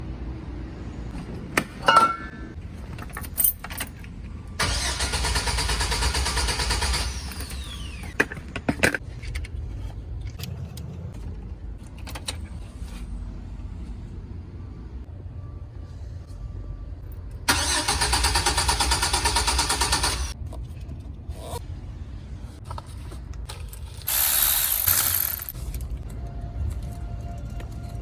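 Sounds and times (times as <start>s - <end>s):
starter cranking engine: 4.6s - 8.1s, 17.5s - 20.4s.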